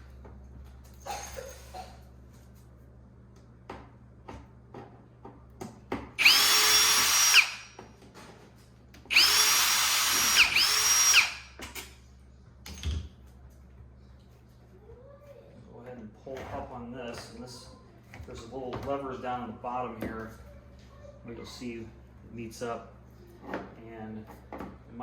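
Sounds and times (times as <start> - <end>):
power drill spinning: 6.2 - 7.8, 9.1 - 11.6.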